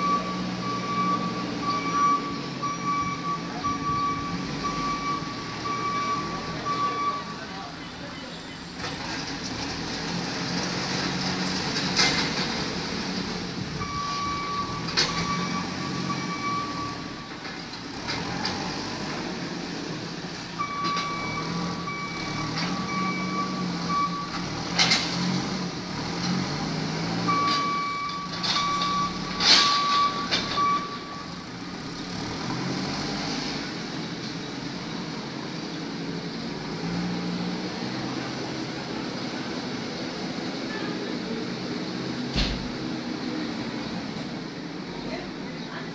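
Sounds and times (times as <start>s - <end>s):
reversing alarm beeping: 0.0s - 7.6s, 13.8s - 17.3s, 20.6s - 24.4s, 27.3s - 31.4s
diesel engine under load: 0.0s - 45.9s.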